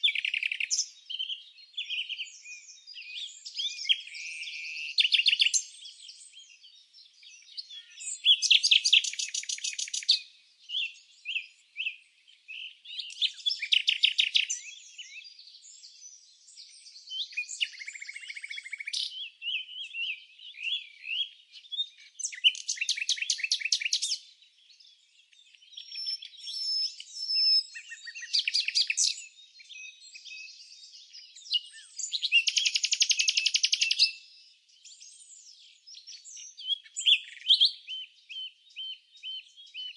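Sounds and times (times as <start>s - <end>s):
songbirds trilling and chirping: 0.0s - 39.9s.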